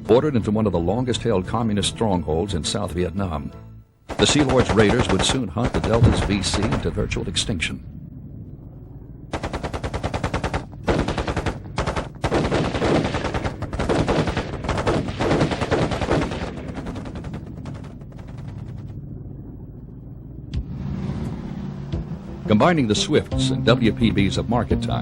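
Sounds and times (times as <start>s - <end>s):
machine-gun fire: 4.1s - 7.1s, 9.3s - 19.0s.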